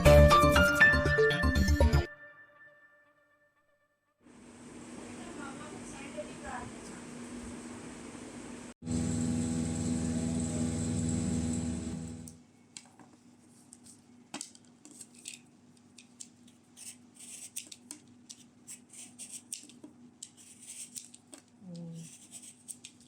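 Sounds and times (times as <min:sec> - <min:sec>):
loud steady hum: 0:08.8 - 0:12.4.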